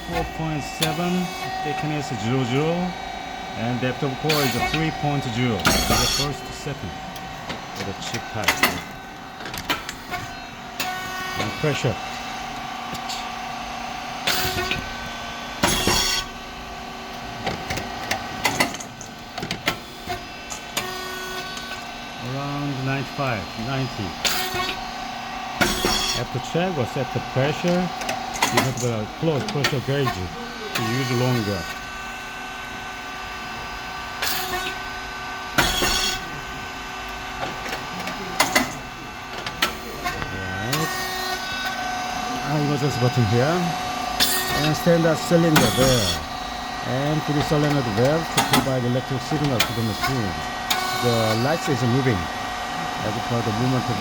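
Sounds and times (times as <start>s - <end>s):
machine humming: 0.0s - 54.0s.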